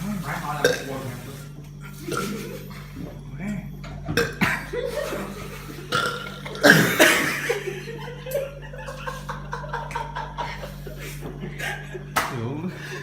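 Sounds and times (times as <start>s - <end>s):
person belching: 0.6s - 1.0s, 2.0s - 2.6s, 4.1s - 4.8s, 5.8s - 7.6s.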